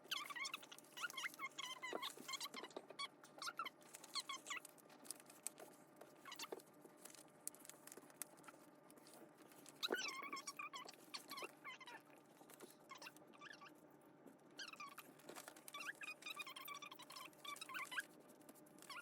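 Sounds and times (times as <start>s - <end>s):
paper folding and crinkling: 0.4s - 11.5s, 14.8s - 19.0s
high squeaky chirps: 15.7s - 18.1s.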